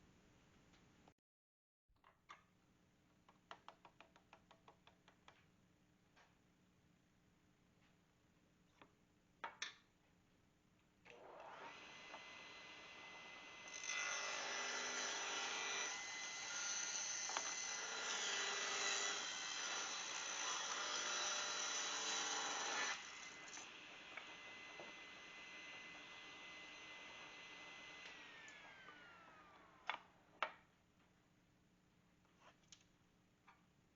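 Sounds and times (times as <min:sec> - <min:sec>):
table saw whining: 0:11.1 - 0:30.2.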